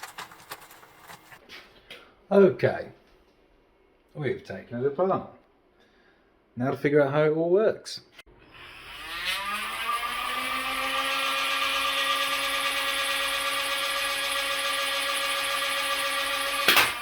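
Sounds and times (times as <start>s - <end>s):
small electric motor whine: 8.4s - 17.0s.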